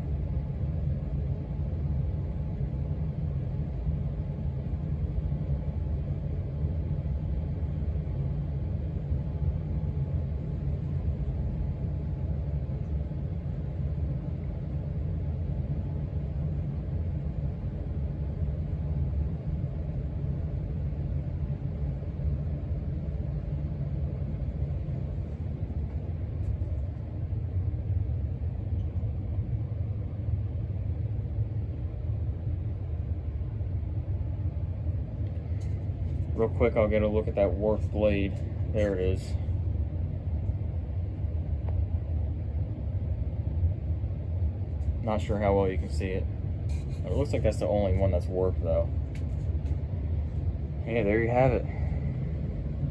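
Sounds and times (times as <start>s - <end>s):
ceiling fan running: 0.0s - 52.9s.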